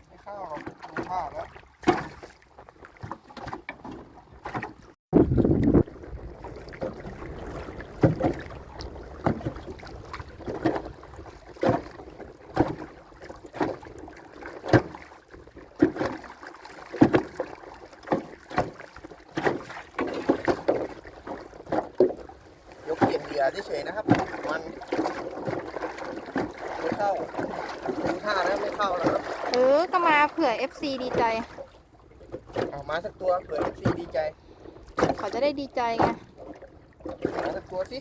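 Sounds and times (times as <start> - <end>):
water splashing: 0.0 - 38.0
knocks on a small boat: 1.8 - 2.3, 8.0 - 10.9, 11.5 - 14.0, 14.6 - 15.1, 15.8 - 16.3, 16.9 - 29.6, 32.3 - 32.9, 33.6 - 34.2, 35.0 - 36.4.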